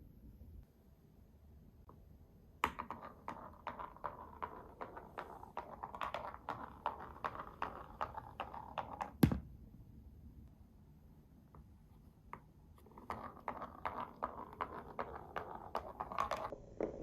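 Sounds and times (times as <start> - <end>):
marbles rolling down wooden track: 2.6 - 9.2, 12.8 - 17.0.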